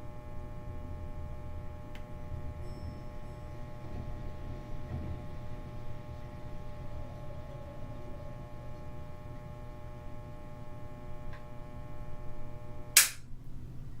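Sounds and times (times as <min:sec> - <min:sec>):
lamp electrical hum: 0:00.0 - 0:14.0
switch click: 0:13.0 - 0:13.2.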